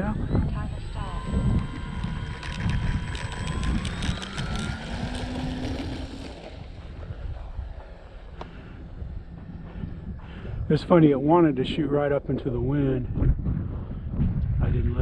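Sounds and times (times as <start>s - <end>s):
model plane propeller whine: 0.0s - 10.7s
wind buffeting microphone: 0.0s - 15.0s.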